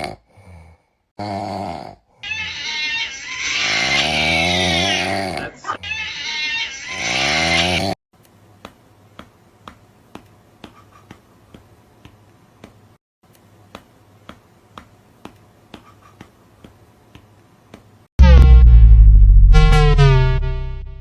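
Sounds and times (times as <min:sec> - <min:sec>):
loud voice-like sound: 0:03.6 - 0:05.8.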